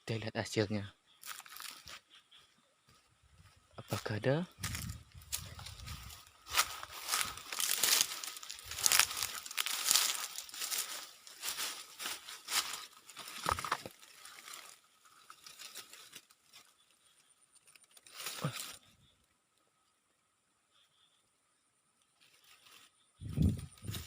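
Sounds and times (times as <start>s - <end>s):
rustling and crinkling handling: 1.2s - 2.0s, 3.5s - 18.9s.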